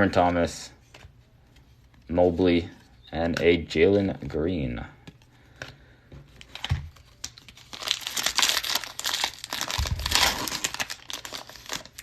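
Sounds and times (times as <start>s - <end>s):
cellophane wrapper crinkling: 6.4s - 12.0s.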